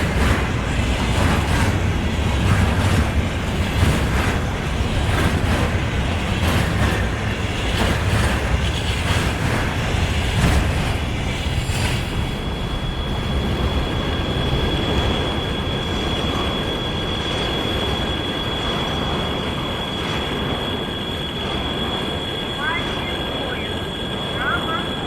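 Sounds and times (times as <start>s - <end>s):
train knocks: 0.0s - 12.3s
train wheel and rail noise: 0.0s - 25.0s.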